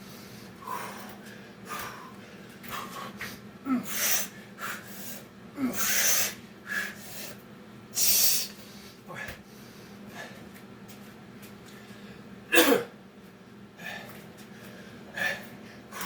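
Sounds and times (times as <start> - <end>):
person breathing hard: 0.0 - 7.4, 13.8 - 16.0.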